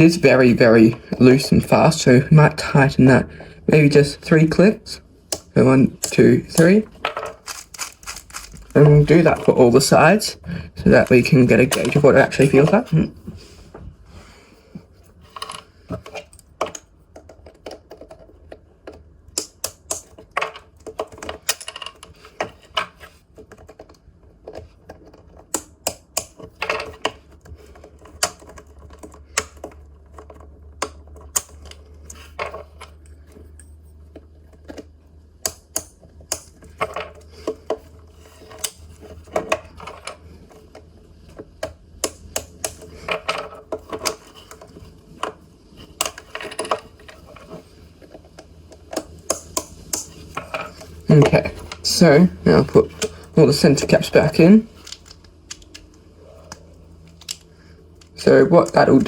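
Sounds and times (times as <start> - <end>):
handling plastic puzzle pieces: 6.0 - 10.2, 36.1 - 59.0.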